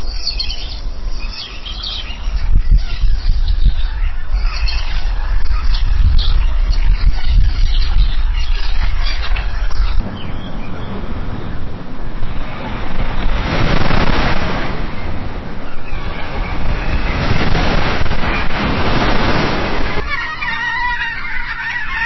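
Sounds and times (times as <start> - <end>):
wind buffeting microphone: 0.0 - 22.0
ocean surf washing in: 9.9 - 20.4.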